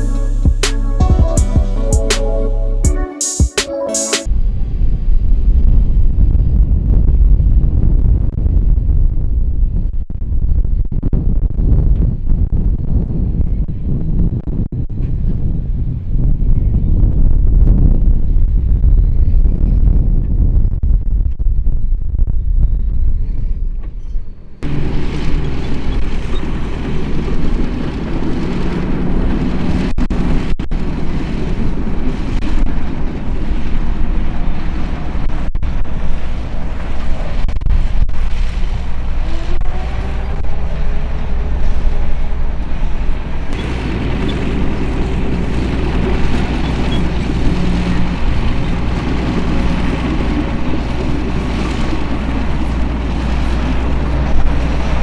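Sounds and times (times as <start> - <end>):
diesel engine rumbling under load: 0.0 - 2.9, 24.6 - 55.0
rising and falling whine: 0.0 - 4.5.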